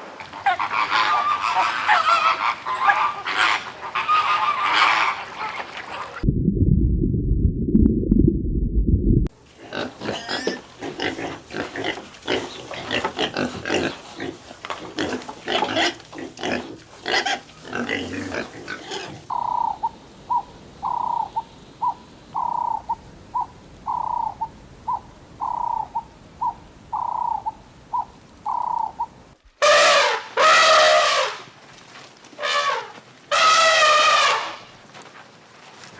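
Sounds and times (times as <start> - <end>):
short harsh animal calls: 32.4 - 34.7.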